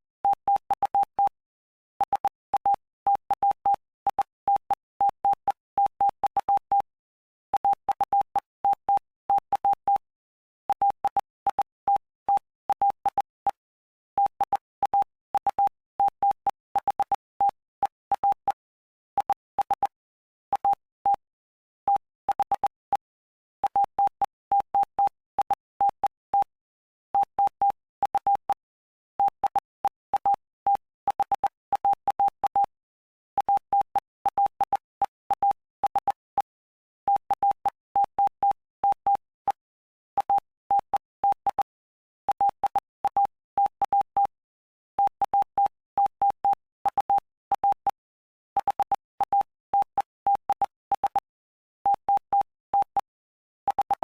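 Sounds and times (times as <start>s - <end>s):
morse code beeps: 2.0s - 6.9s, 7.5s - 10.0s, 14.2s - 18.6s, 21.9s - 26.5s, 27.2s - 32.7s, 33.4s - 39.6s, 40.2s - 44.4s, 45.0s - 48.0s, 48.6s - 53.1s, 53.7s - 54.0s.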